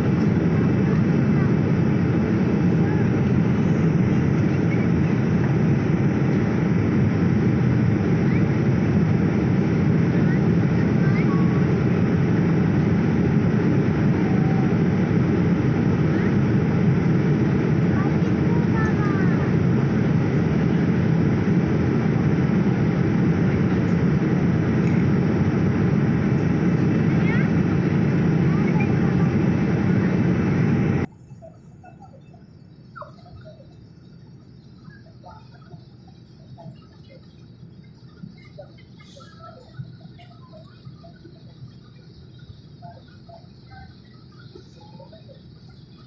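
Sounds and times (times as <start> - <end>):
jet cabin engine and airflow rush: 0.0 - 31.9.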